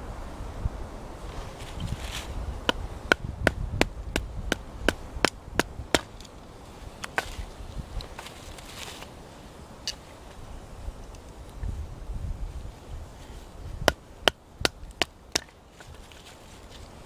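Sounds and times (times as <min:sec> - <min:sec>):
wood being chopped: 0:02.6 - 0:06.3, 0:13.8 - 0:15.9.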